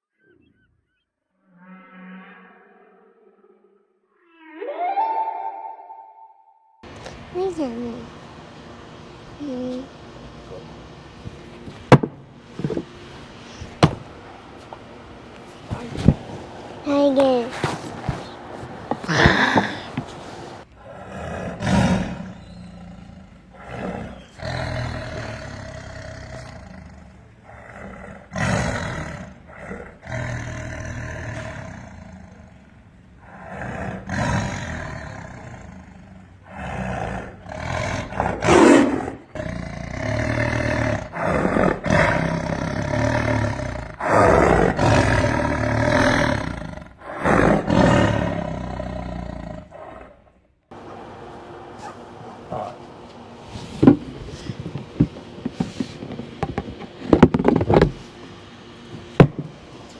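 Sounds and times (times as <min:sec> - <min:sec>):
boy imitating roars and growls: 0:19.0 - 0:20.0.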